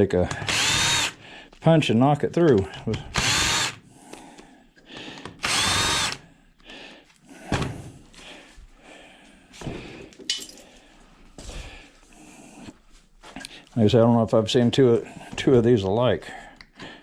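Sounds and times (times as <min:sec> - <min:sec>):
power drill motor: 0:00.3 - 0:01.2, 0:02.9 - 0:03.8, 0:05.2 - 0:06.2.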